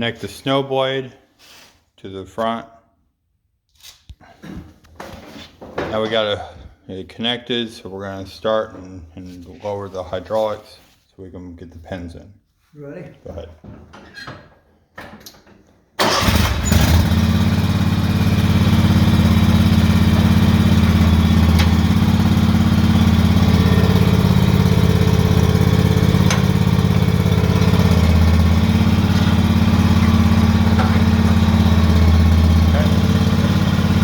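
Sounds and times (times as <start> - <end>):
lawn tractor engine running: 16.0 - 34.0.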